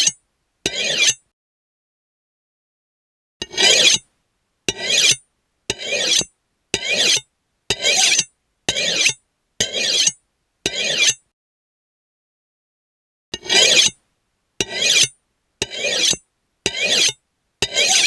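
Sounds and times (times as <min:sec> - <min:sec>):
knife scraping on sharpening steel: 0:00.0 - 0:01.2, 0:03.4 - 0:04.0, 0:04.7 - 0:11.2, 0:13.4 - 0:14.0, 0:14.6 - 0:18.0.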